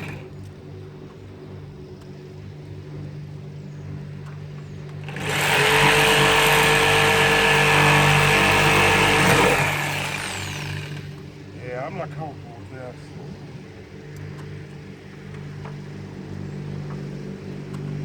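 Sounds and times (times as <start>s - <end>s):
electric power saw cutting: 0.0s - 0.3s, 5.0s - 11.2s.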